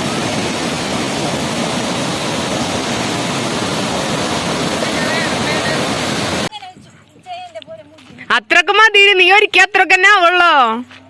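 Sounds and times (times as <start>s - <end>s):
waterfall rushing: 0.0s - 6.5s.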